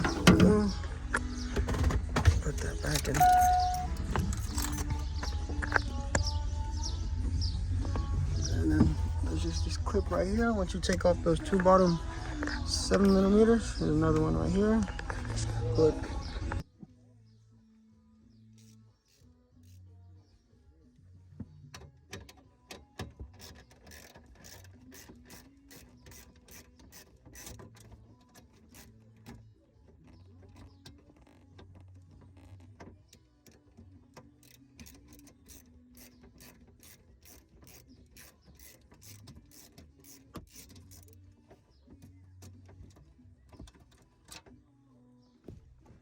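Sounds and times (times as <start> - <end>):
ratchet wrench clicking: 18.6 - 19.8, 23.4 - 27.9, 34.4 - 41.2.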